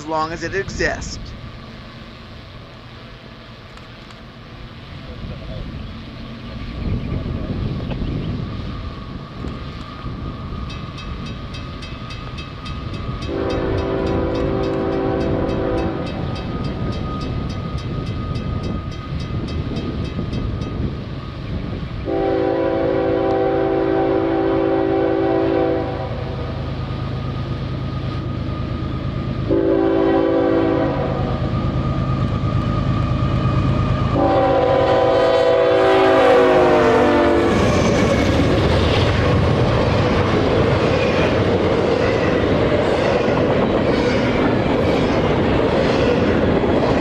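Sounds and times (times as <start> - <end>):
train rumbling and clacking: 0.0 - 47.0
locomotive air horn: 13.3 - 16.1, 22.1 - 26.4, 29.5 - 31.3, 34.2 - 37.6.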